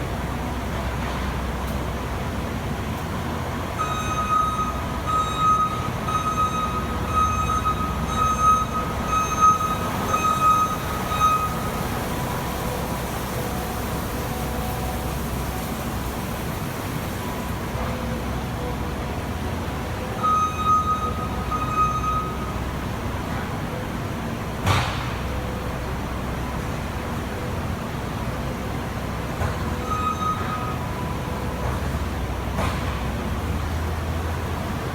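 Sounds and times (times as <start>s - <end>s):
diesel engine running: 0.0s - 34.9s
backup alarm beeping: 3.8s - 13.0s, 20.0s - 22.9s, 29.8s - 31.3s.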